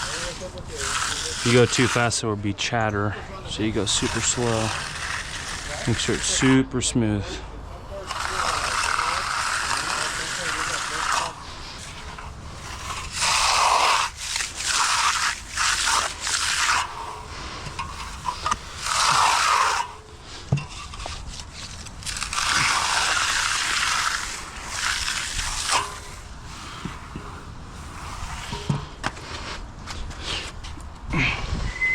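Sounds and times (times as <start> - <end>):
tool scraping wet concrete: 0.0 - 30.9.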